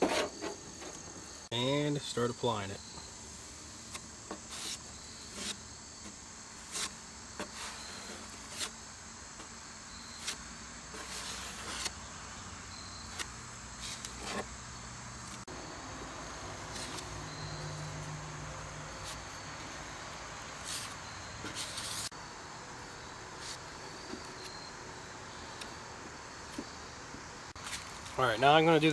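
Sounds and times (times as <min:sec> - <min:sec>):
crickets chirping: 0:00.0 - 0:28.9
spreader scraping filler: 0:06.6 - 0:08.8, 0:09.4 - 0:12.0, 0:13.0 - 0:14.5, 0:20.6 - 0:22.1.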